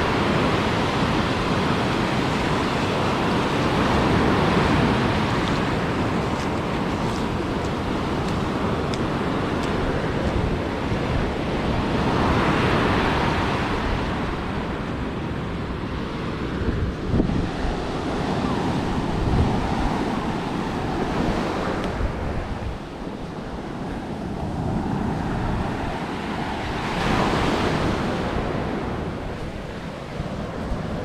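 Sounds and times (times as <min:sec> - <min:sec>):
ocean surf breaking: 0:00.0 - 0:16.6, 0:23.4 - 0:31.0
wind rumbling on microphone: 0:00.0 - 0:31.0.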